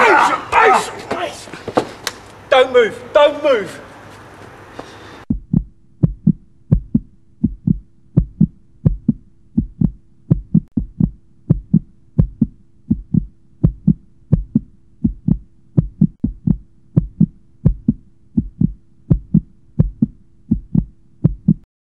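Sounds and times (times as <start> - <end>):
heartbeat thumps: 5.3 - 21.7.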